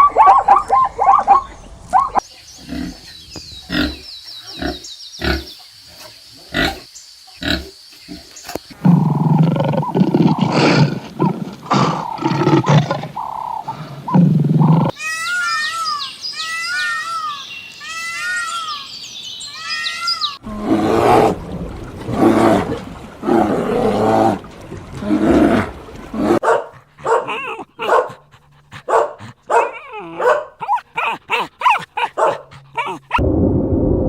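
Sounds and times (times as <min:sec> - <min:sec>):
dog yipping and barking: 0:00.0 - 0:02.2, 0:26.4 - 0:28.2, 0:28.9 - 0:33.2
high animal chirps: 0:14.9 - 0:20.4
deep rough roars: 0:20.4 - 0:26.4.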